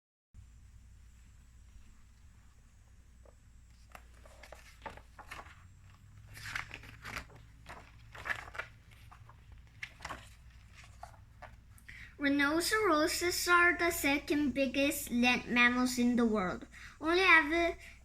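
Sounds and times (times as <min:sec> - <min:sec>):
rustling: 0:01.2 - 0:11.9.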